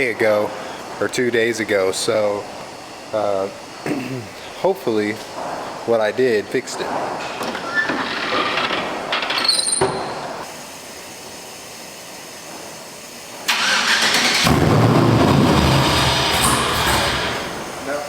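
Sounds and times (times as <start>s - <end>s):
car engine running: 14.2s - 17.8s.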